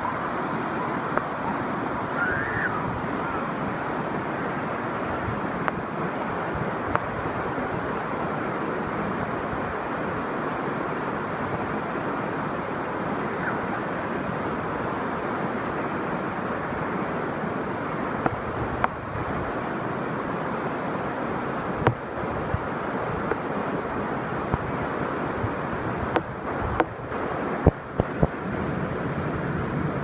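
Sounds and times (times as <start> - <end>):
waterfall rushing: 0.0 - 30.0.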